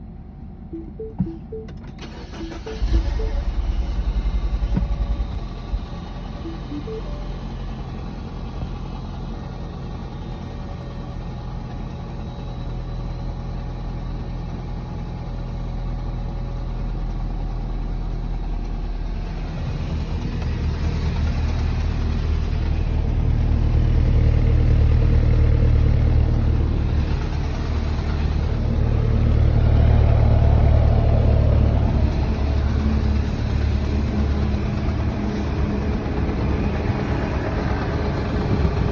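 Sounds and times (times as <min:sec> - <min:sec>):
engine knocking: 0:11.0 - 0:38.9.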